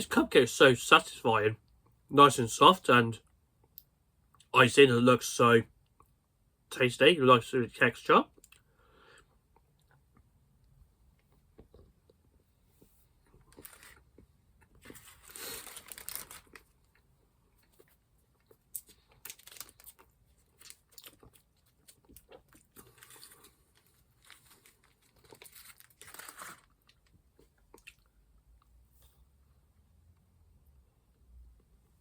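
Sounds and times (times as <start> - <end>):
person chewing: 13.2 - 28.2.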